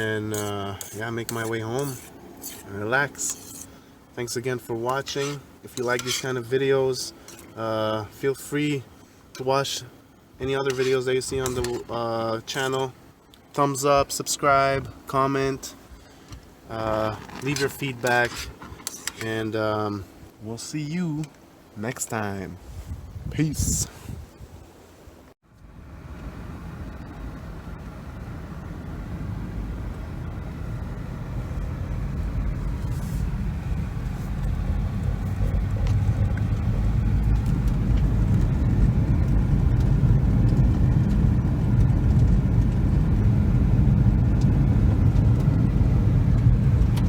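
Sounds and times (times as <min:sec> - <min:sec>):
car engine and road rumble: 0:00.0 - 0:13.6, 0:25.4 - 0:47.0.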